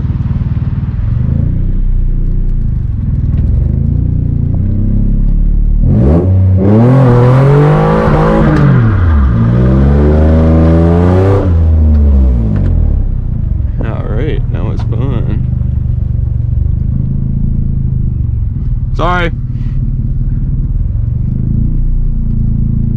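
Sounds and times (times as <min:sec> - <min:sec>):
car engine revving: 0:00.0 - 0:22.9.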